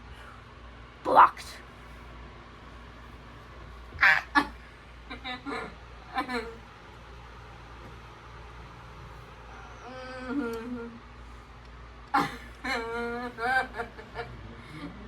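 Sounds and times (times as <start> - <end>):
steady low hum: 0.0 - 15.0
person humming: 9.8 - 11.0.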